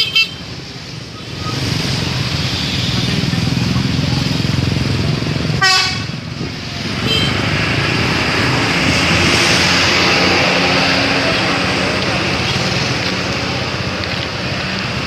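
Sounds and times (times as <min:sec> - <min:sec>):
bus engine and road noise: 0:00.0 - 0:15.0
bus air horn blast: 0:05.6 - 0:06.2, 0:07.0 - 0:07.4.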